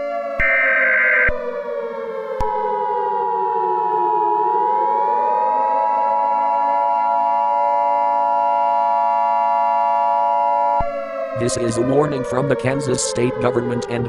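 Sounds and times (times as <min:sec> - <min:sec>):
civil defense siren: 0:00.0 - 0:14.0
electronic alert tone: 0:00.4 - 0:01.3.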